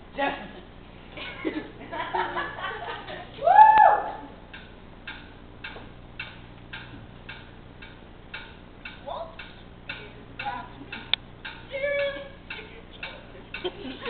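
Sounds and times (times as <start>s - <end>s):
mouth ticking noise: 4.5s - 14.0s.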